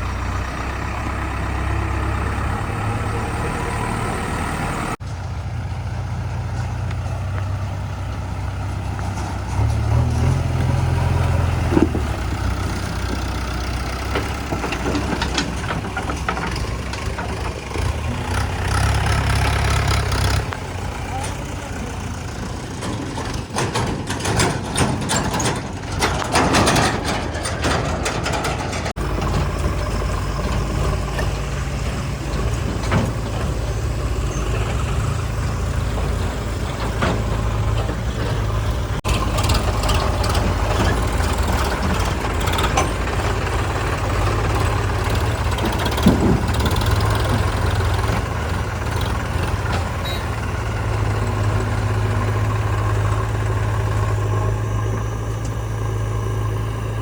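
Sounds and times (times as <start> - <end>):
heavy diesel engines droning: 0.0 - 57.0
machine clatter and knocks: 12.9 - 20.0, 22.7 - 35.2, 36.0 - 53.0.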